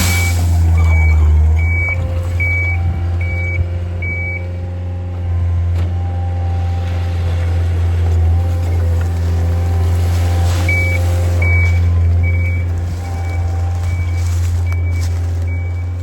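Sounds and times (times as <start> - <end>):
backup alarm beeping: 0.0 - 4.5, 10.6 - 16.0
diesel engine running: 0.0 - 16.0.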